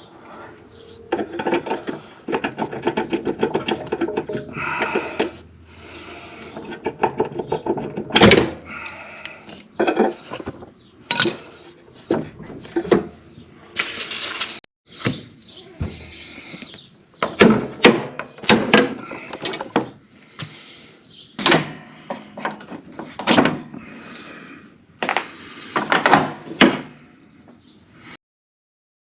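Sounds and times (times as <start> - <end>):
tools knocking and clanking on metal: 1.1 - 5.4, 6.5 - 13.2, 17.2 - 20.5, 21.4 - 23.9, 25.0 - 27.0.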